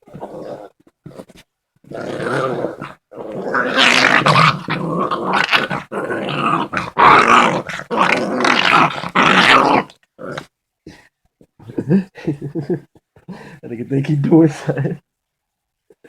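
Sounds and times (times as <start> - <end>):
puppies growling: 0.0 - 10.5.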